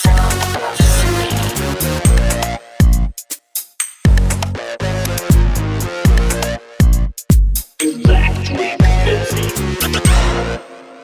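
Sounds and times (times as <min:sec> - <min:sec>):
electronic dance music: 0:00.0 - 0:02.6, 0:07.8 - 0:10.6
deep kick drums: 0:02.0 - 0:03.2, 0:04.1 - 0:04.4, 0:05.3 - 0:09.2.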